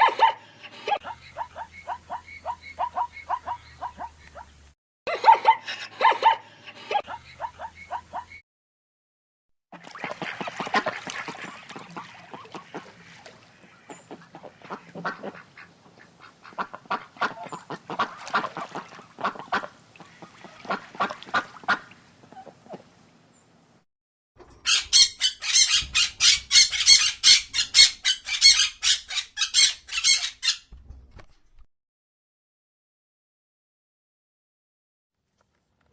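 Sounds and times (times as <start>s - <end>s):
waterfowl honking and quacking: 9.8s - 22.9s, 24.7s - 30.6s
rapid run of bird calls: 9.8s - 23.0s.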